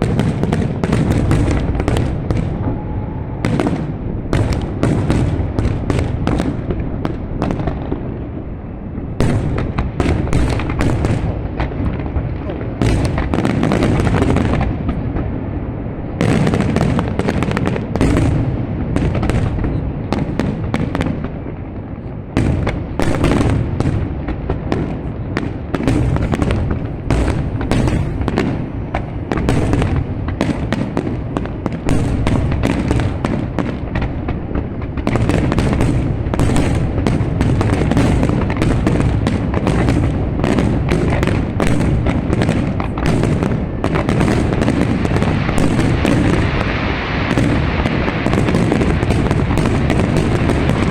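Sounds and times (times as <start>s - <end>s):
fireworks bangs and crackles: 0.0s - 50.9s.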